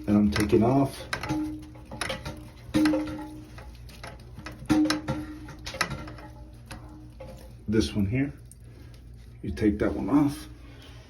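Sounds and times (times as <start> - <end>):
plastic parts clicking and knocking: 0.3 - 6.3.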